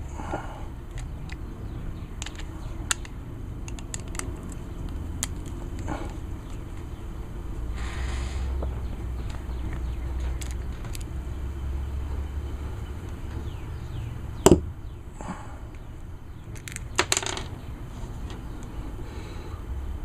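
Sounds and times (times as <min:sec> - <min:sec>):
small metallic clicks and taps: 0:02.2 - 0:05.9.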